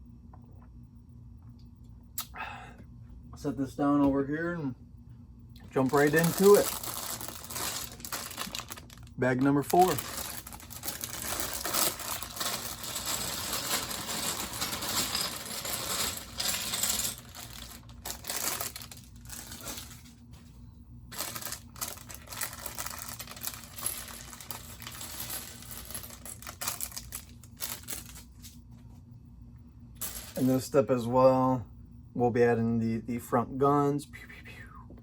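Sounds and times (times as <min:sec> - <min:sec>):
plastic bag crinkling: 0:05.6 - 0:20.1, 0:21.1 - 0:28.3
plastic pieces clattering: 0:05.6 - 0:20.1, 0:21.1 - 0:28.3.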